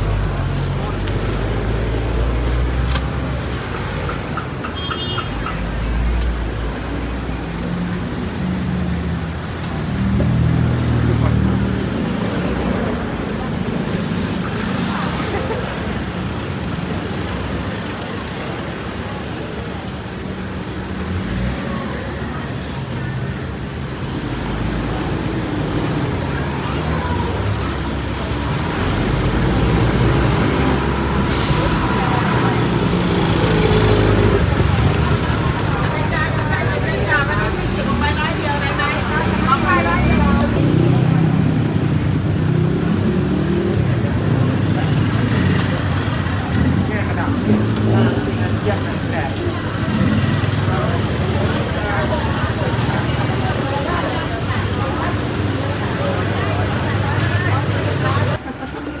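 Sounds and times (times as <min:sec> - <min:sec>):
city street traffic: 0:00.0 - 0:59.0
vehicle engines rumbling: 0:00.0 - 0:59.0.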